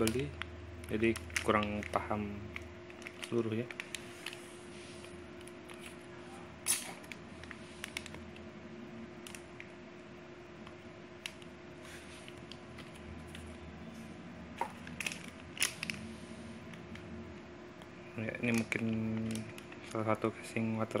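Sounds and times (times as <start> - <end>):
plastic accessories clicking and crinkling: 0.0 - 4.4, 6.7 - 8.5, 9.2 - 9.7, 10.6 - 11.5, 12.2 - 13.6, 14.6 - 16.0, 17.8 - 21.0
faint steady hum: 0.0 - 21.0.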